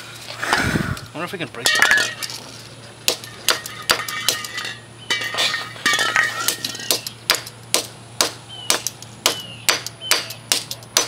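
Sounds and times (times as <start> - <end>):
clinking and scraping: 0.0 - 7.5.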